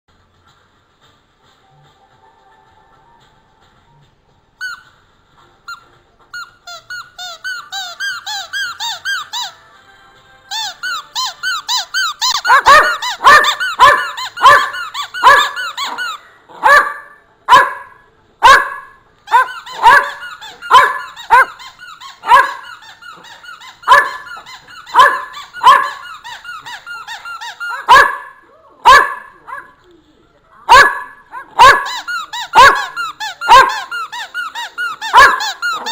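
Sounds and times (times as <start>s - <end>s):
squeaky dog toy squeaking: 4.6s - 5.0s, 5.6s - 9.6s, 10.5s - 18.0s, 18.6s - 28.4s, 30.6s - 35.9s.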